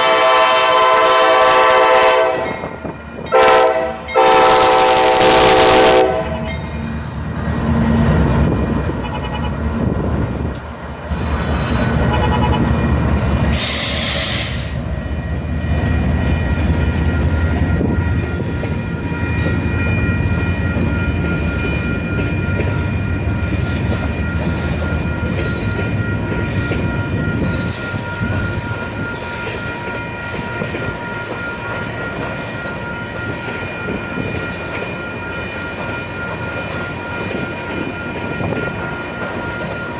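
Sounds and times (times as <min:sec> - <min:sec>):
train horn: 0:00.0 - 0:06.6, 0:09.0 - 0:09.6, 0:12.0 - 0:14.8
diesel locomotive rumble: 0:00.0 - 0:31.0
rolling freight cars: 0:00.0 - 0:39.9
train wheels squealing: 0:06.4 - 0:39.9
loud hiss: 0:13.2 - 0:14.9.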